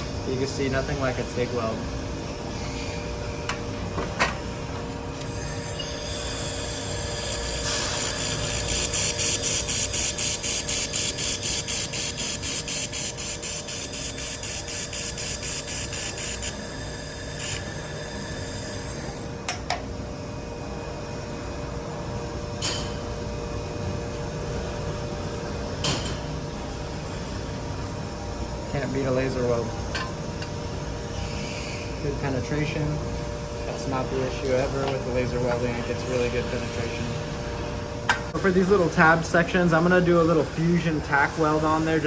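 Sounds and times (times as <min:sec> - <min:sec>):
laser welder pulsing hiss: 0:05.3 - 0:19.2.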